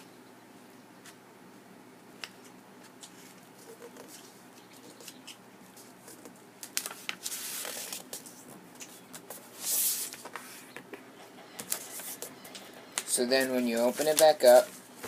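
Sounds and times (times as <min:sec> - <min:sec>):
paper being folded and creased: 0:05.0 - 0:10.7, 0:13.4 - 0:15.0.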